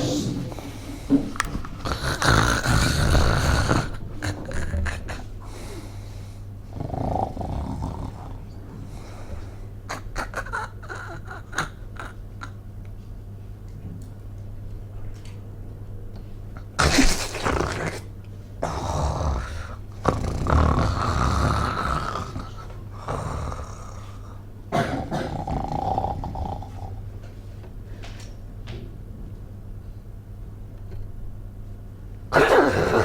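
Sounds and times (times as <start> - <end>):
person snoring loudly: 1.8 - 5.2, 6.7 - 8.3, 16.8 - 24.4, 25.0 - 27.0, 32.3 - 33.0.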